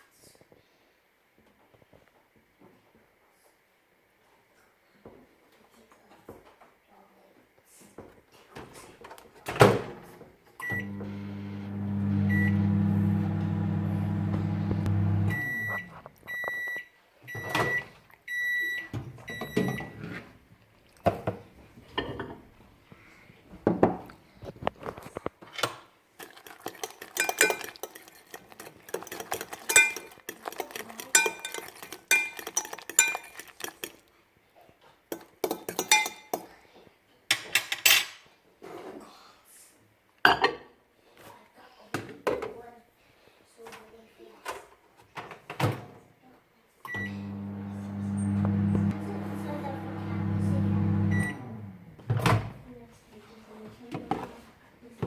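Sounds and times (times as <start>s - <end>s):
microwave humming: 10.6s - 16.0s, 46.9s - 52.7s
microwave end beeps: 10.6s - 20.0s, 46.9s - 51.8s
microwave keypad beep: 10.6s - 20.0s, 46.9s - 48.9s
utensil clinking on dish: 26.2s - 34.0s, 35.1s - 36.5s.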